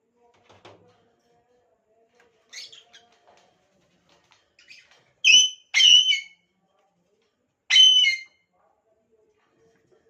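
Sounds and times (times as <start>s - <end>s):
lovebirds screeching: 4.7s - 6.3s, 7.7s - 8.2s.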